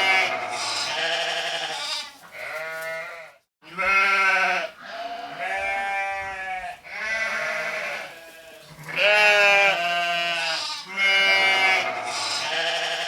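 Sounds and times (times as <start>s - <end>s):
sheep bleating: 0.0s - 13.0s.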